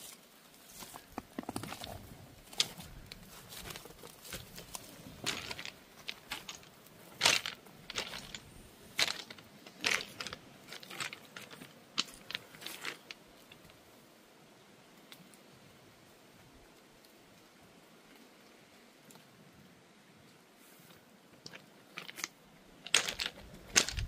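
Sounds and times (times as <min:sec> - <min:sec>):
crinkling and crunching clicks: 0:00.8 - 0:13.8, 0:21.4 - 0:24.0.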